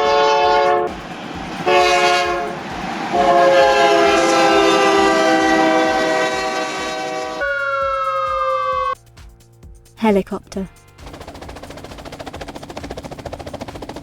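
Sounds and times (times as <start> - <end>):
train horn blasts: 0.0 - 9.0
train rumbling: 0.0 - 9.0, 11.0 - 14.0.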